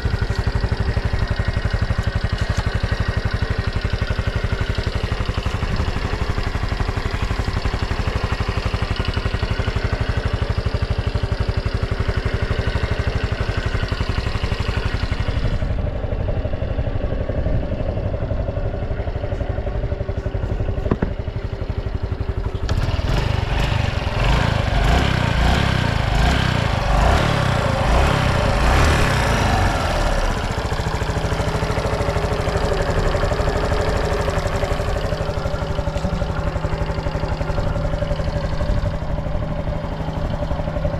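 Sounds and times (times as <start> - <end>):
motorcycle engine idling and revving: 0.0 - 40.9.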